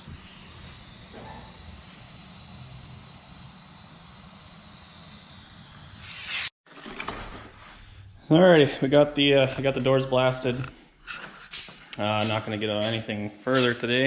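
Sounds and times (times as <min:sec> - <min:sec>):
loud rush of air: 0:00.0 - 0:06.5
compressed air hissing: 0:00.0 - 0:06.6, 0:11.5 - 0:13.8.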